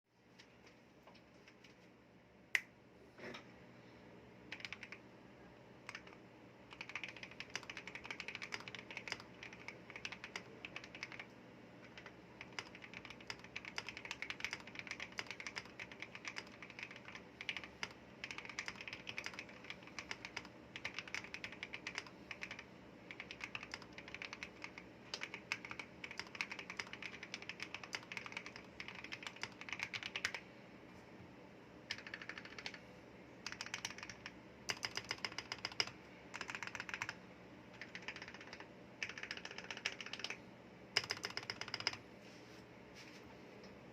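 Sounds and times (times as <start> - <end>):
mechanical keyboard typing: 4.5 - 5.0, 5.8 - 30.4, 31.9 - 32.8, 33.4 - 40.4, 41.0 - 42.0.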